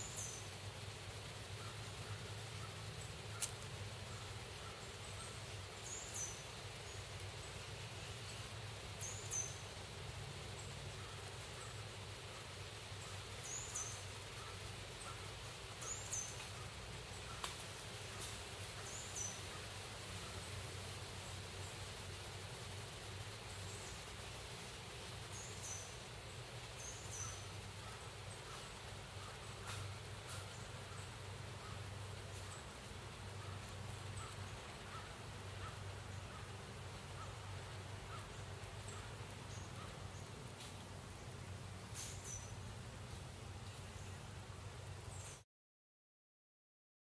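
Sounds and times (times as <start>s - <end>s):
low background noise: 0.0s - 45.4s.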